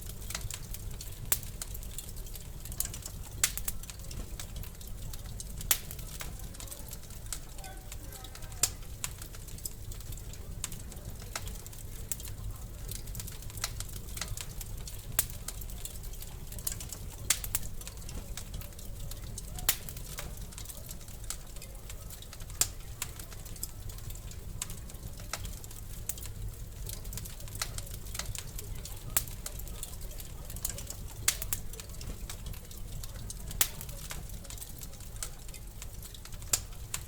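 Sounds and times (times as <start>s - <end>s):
wood fire crackling: 0.0s - 37.0s.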